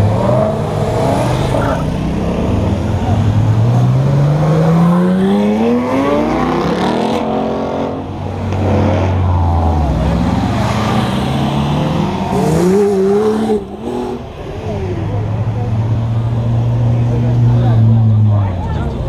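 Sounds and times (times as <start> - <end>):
sports car engines accelerating: 0.0 - 19.0.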